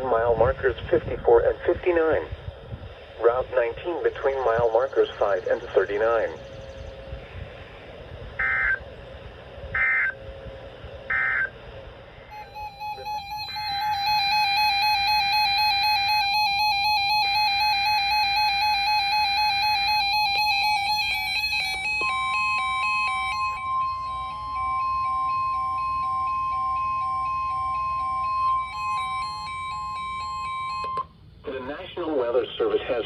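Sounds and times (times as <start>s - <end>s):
steady alert tone: 8.4s - 8.8s, 9.7s - 10.2s, 11.1s - 11.6s, 12.3s - 31.0s
digital data screech: 12.3s - 25.3s
two-note electronic chime: 12.3s - 31.0s.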